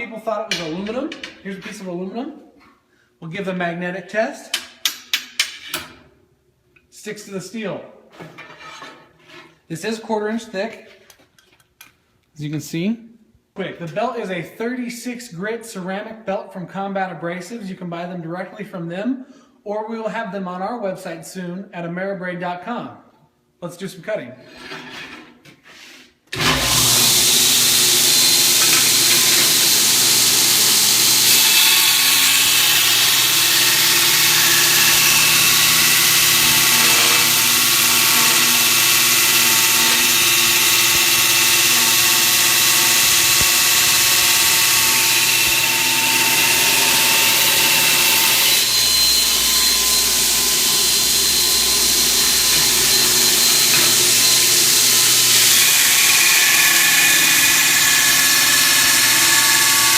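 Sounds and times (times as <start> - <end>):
belt grinder grinding steel: 26.4 - 59.9.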